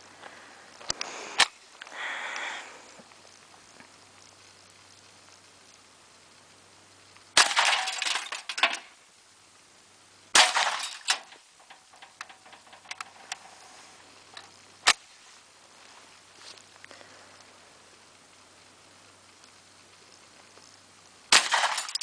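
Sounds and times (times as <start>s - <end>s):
submachine gun shots with echo: 7.4s - 8.0s, 21.3s - 22.0s
faint clinks and ticks: 11.1s - 14.6s.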